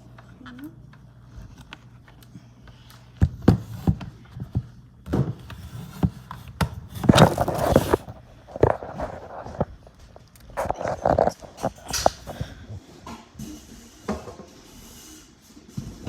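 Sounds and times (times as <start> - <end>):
kitchenware scraping and rustling: 5.1 - 14.7.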